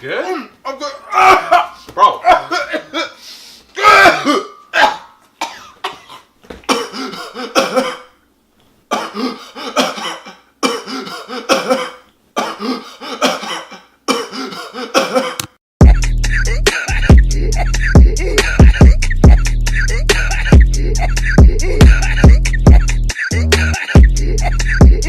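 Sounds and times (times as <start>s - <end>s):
person coughing: 2.3s - 3.2s, 3.8s - 8.2s, 8.9s - 15.5s, 16.4s - 17.2s, 21.8s - 24.6s.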